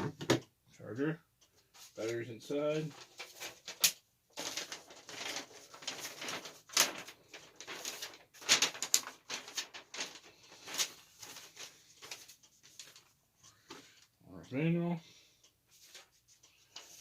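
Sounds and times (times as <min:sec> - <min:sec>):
packaging rustling and crinkling: 0:02.9 - 0:13.2.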